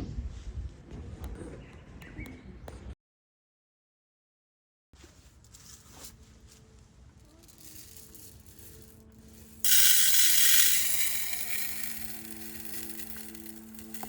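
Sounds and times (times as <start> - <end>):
loud hiss: 7.5 - 14.0.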